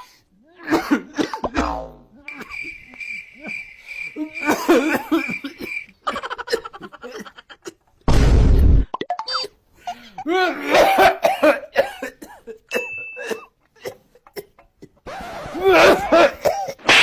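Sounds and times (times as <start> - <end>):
voices: 2.1 - 6.1.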